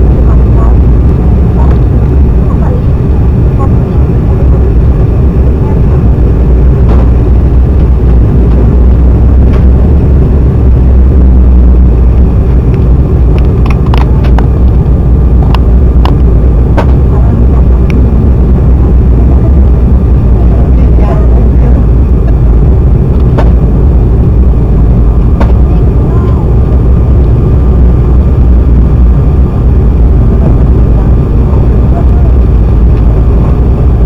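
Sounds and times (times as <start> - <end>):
airflow noise: 0.0 - 34.0
jet cabin engine rumble: 0.0 - 34.0
sharp clicks and rattles: 11.8 - 20.2, 21.9 - 27.6.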